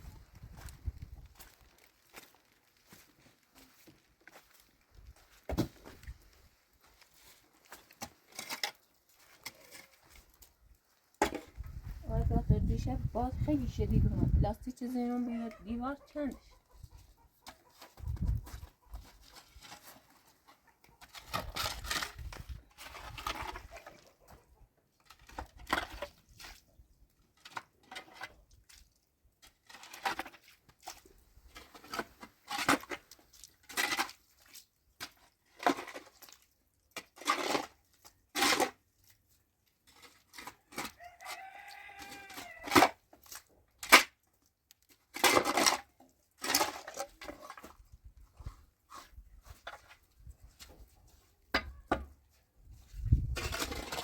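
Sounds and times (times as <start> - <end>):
rooster crowing: 41.0 - 42.7.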